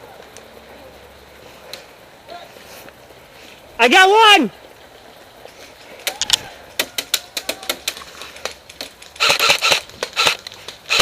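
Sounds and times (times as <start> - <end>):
full-auto airsoft burst: 9.2 - 11.0.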